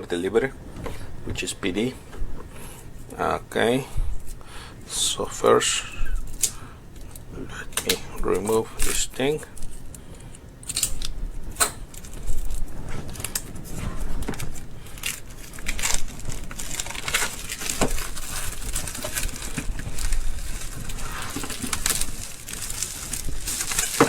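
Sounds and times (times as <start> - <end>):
packaging crinkling and rustling: 6.2 - 24.0.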